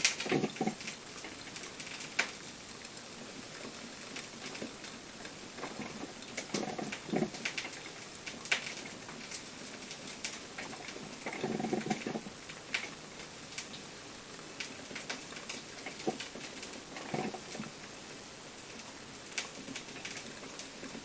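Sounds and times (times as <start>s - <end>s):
coffee maker gurgling: 0.0s - 2.3s, 3.2s - 13.7s, 14.3s - 18.0s
frying pan crackling and popping: 0.0s - 21.0s.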